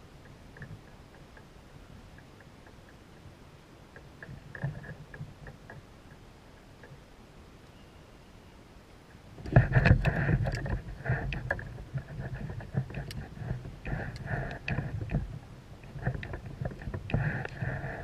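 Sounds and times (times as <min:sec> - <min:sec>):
low rumble of water: 0:08.6 - 0:18.0.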